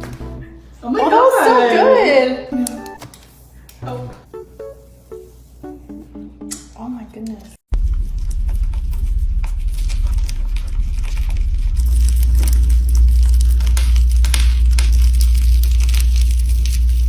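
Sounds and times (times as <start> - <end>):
steady low rumble: 7.7 - 17.0.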